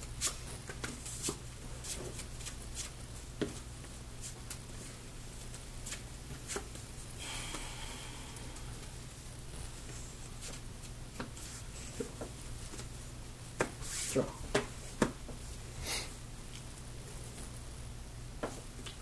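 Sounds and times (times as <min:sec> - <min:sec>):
steady low hum: 0:01.4 - 0:13.6
soft rustle: 0:08.5 - 0:15.8.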